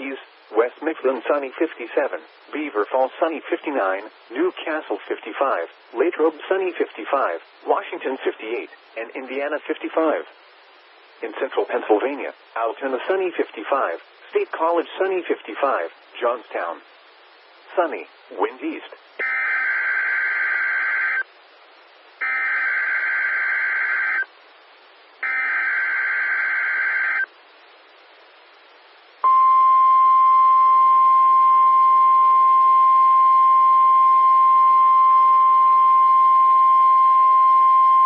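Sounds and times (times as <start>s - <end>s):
steady warning alarm tone: 19.2s - 21.2s, 22.2s - 24.3s, 25.2s - 27.3s.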